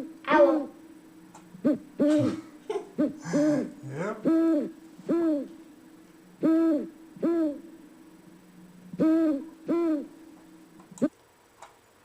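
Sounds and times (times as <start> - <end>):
owl hooting: 1.5 - 5.7, 6.3 - 8.0, 8.8 - 10.3.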